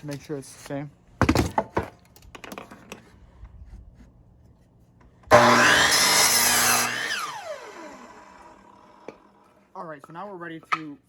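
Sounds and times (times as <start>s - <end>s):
knocks of handling wood: 1.2s - 3.1s
power saw cutting wood: 5.2s - 9.6s
saw blade winding down whine: 5.3s - 9.4s.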